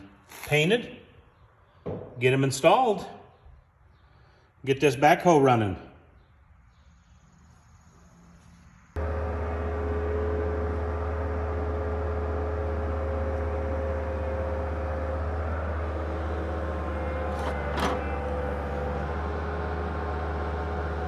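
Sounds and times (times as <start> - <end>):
diesel engine running: 9.0 - 21.0.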